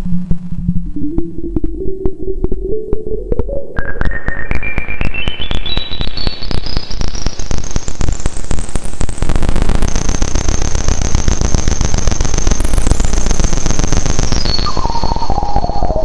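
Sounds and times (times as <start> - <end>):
low rumble with clicking pulses: 0.0 - 5.4
synthesizer tone rising in steps: 0.0 - 6.8.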